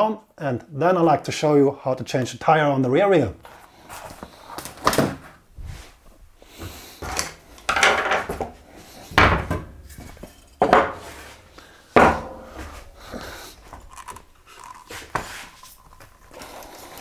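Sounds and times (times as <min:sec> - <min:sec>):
knocks and metal clatters: 0:07.7 - 0:11.4, 0:12.0 - 0:13.0.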